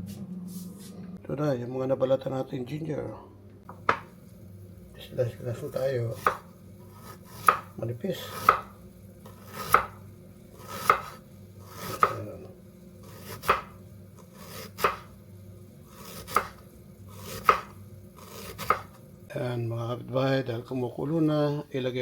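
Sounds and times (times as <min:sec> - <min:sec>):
knife knocking on cutting board: 0:03.7 - 0:04.1
knife slicing ginger: 0:06.1 - 0:12.4, 0:13.0 - 0:15.2, 0:15.8 - 0:19.1.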